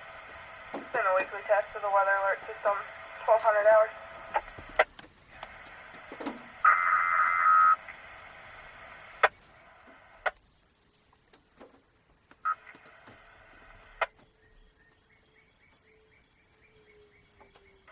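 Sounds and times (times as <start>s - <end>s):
radio hiss: 0.0s - 10.4s, 12.4s - 14.2s
steady radio tone: 0.0s - 10.4s, 12.4s - 14.1s.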